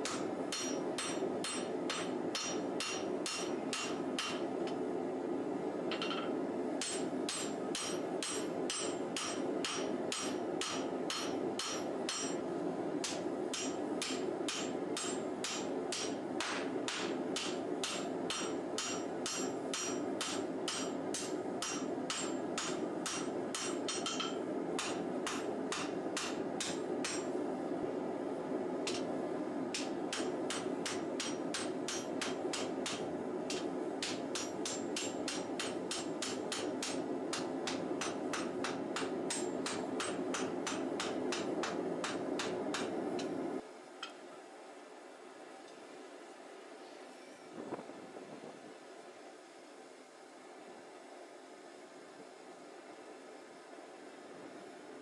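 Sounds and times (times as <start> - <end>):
hammer striking steel on anvil: 0.0 - 4.5, 6.0 - 12.4, 13.0 - 27.4, 29.8 - 43.4.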